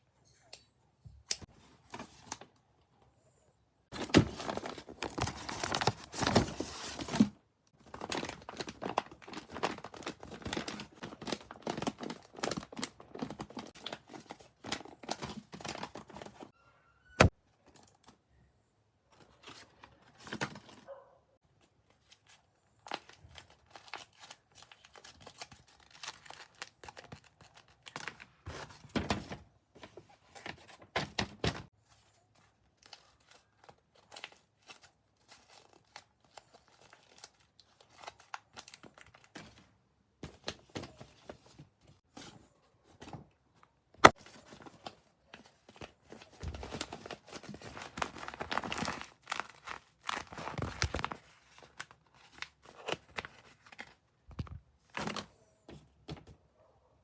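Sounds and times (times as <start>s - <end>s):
packaging tearing and crinkling: 3.9s - 16.4s, 46.1s - 54.0s.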